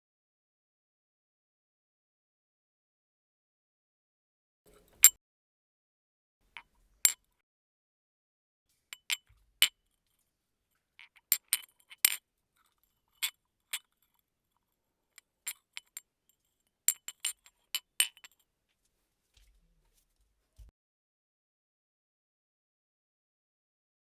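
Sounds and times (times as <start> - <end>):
tea glass clinking: 9.0 - 9.3.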